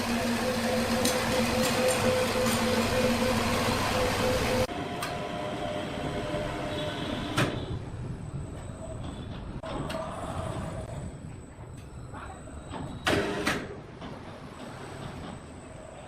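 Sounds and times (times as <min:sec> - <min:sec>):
machine humming: 0:00.0 - 0:07.4.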